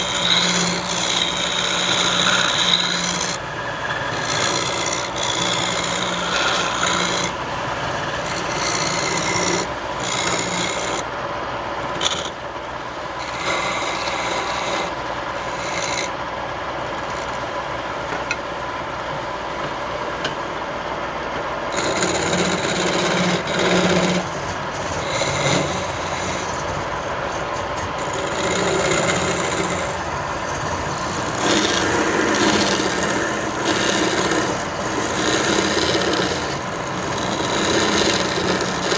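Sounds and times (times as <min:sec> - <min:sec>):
hand tool rasping on wood: 0:00.0 - 0:03.4, 0:04.1 - 0:07.4, 0:08.1 - 0:11.0, 0:12.0 - 0:12.4, 0:13.2 - 0:16.1, 0:21.7 - 0:26.8, 0:27.5 - 0:38.9
wood lathe humming: 0:00.0 - 0:38.9.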